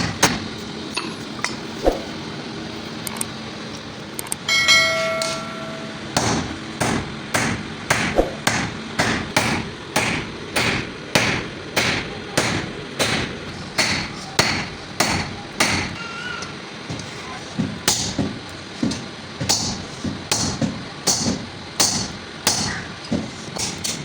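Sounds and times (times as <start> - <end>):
hammer striking steel on anvil: 4.4 - 16.0, 19.4 - 22.8.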